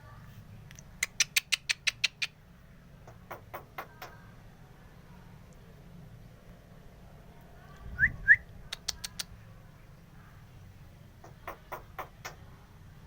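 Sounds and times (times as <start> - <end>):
starling whistles and clicks: 8.0 - 9.3.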